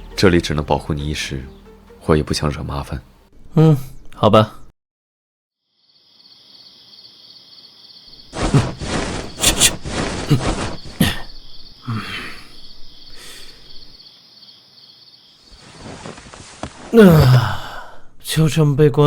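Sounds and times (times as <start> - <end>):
crickets chirping: 5.6 - 16.8
rustles and knocks: 8.2 - 11.2.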